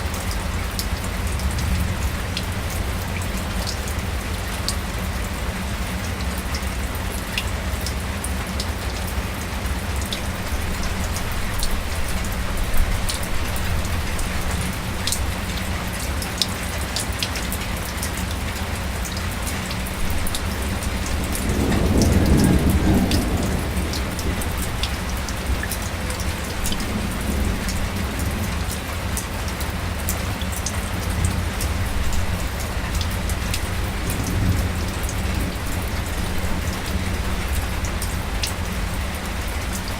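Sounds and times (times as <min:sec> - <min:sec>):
light rain falling: 0:00.0 - 0:39.9
low rumble: 0:00.3 - 0:05.8.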